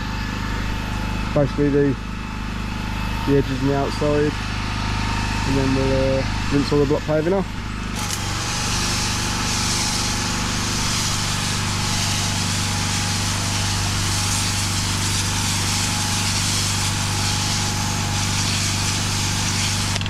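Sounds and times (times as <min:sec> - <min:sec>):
pressure washer engine running: 0:00.0 - 0:20.0
water spraying hiss: 0:08.0 - 0:20.0.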